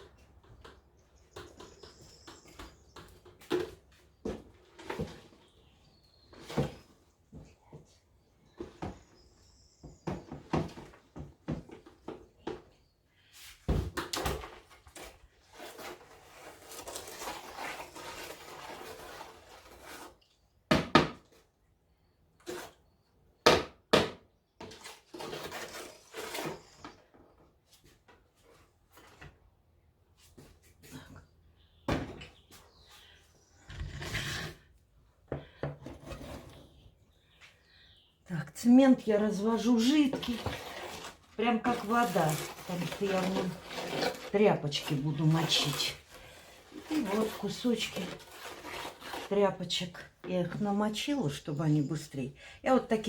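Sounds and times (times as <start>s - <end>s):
objects knocking and thudding: 9.8s - 12.8s, 13.6s - 15.0s, 20.7s - 21.4s, 31.8s - 32.7s, 35.2s - 36.7s.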